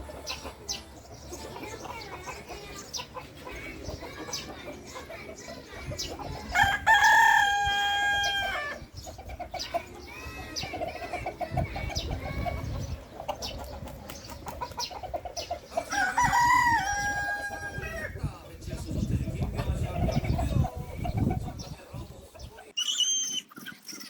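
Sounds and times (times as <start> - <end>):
rooster crowing: 15.9 - 18.1.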